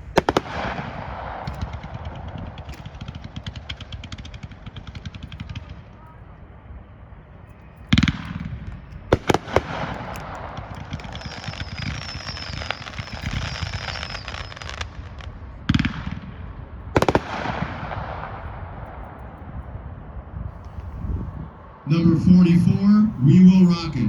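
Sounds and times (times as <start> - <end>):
firework bangs: 0.0 - 6.0, 7.9 - 21.6
firework crackling: 0.0 - 6.0, 7.9 - 16.3, 16.9 - 18.5.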